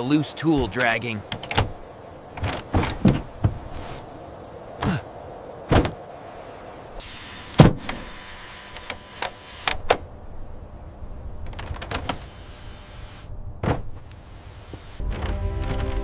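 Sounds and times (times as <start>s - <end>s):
steady hiss: 3.6s - 10.0s, 12.0s - 13.4s, 14.0s - 15.0s.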